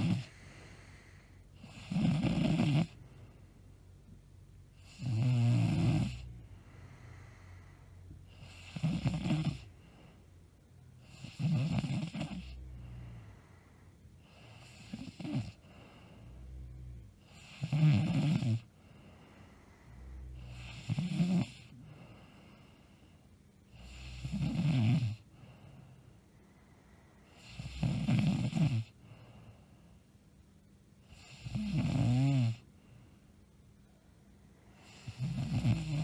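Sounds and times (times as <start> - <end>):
woman snoring loudly: 0.0 - 3.0, 4.8 - 6.4, 8.3 - 9.7, 11.0 - 12.6, 14.4 - 15.6, 16.8 - 18.7, 20.2 - 21.7, 23.8 - 25.2, 27.4 - 29.0, 31.2 - 32.6, 34.8 - 36.0
quiet breathing: 0.0 - 36.0.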